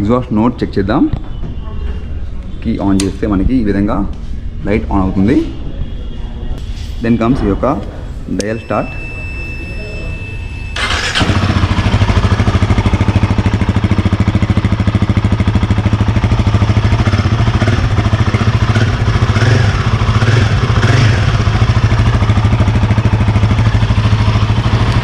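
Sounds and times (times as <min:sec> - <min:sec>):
motorcycle engine starting and idling: 0:10.8 - 0:25.0.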